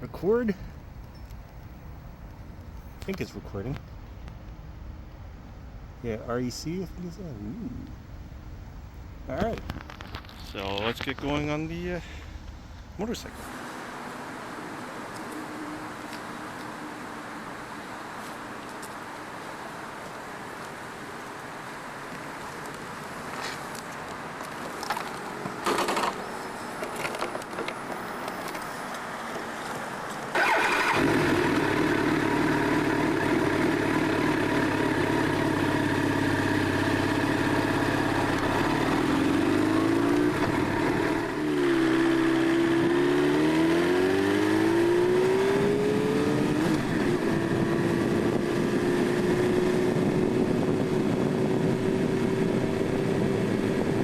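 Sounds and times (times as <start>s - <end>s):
motorcycle engine idling and revving: 30.3s - 54.0s.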